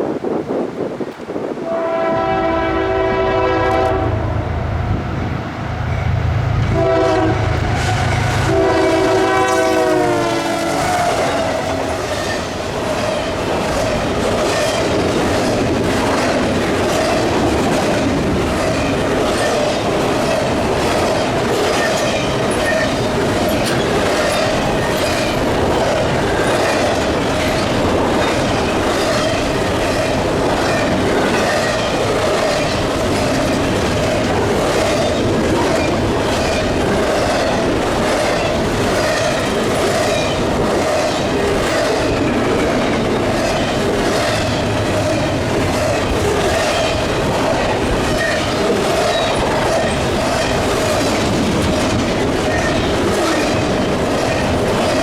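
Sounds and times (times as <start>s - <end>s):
locomotive horn blasts: 1.6s - 4.6s, 6.6s - 12.0s
train wheels clicking over rail joints: 10.6s - 55.0s.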